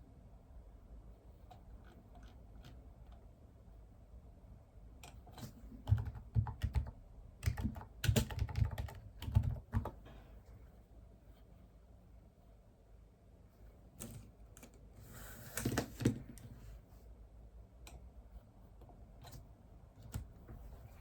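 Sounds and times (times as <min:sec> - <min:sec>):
typing on computer keyboard: 0:05.0 - 0:10.0.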